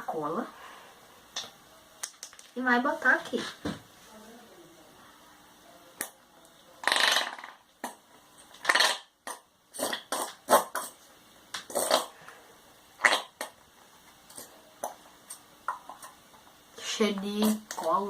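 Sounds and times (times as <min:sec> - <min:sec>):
glue bottle sputtering and squirting: 0:06.8 - 0:07.6, 0:08.6 - 0:11.0, 0:11.6 - 0:12.2, 0:13.0 - 0:13.5.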